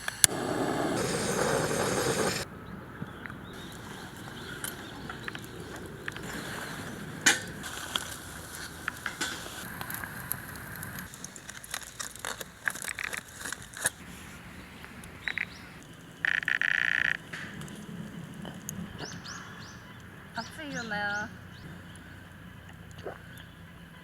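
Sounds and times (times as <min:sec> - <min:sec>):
campfire crackling and popping: 0:00.0 - 0:02.5, 0:03.5 - 0:14.0
loud buzzing chirr: 0:00.0 - 0:02.5.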